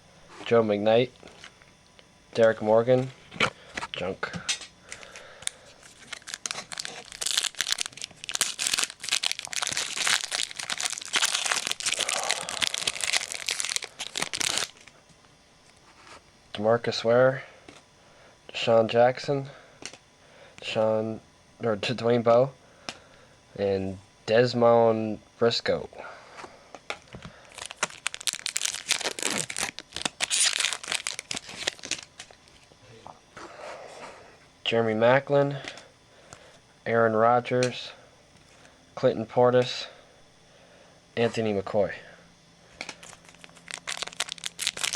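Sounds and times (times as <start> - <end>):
plastic wrapper crinkling: 4.9 - 14.9, 27.4 - 32.7, 43.0 - 44.9.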